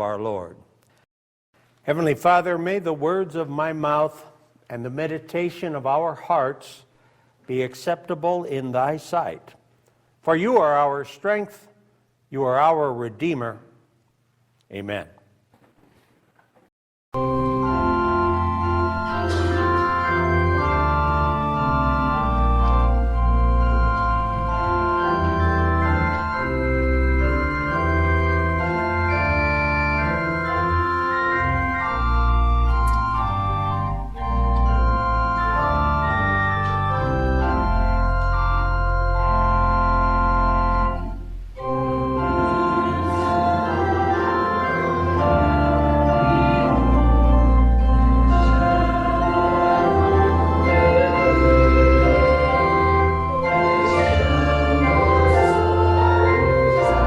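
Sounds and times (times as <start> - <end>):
church organ chords: 17.2 - 57.0.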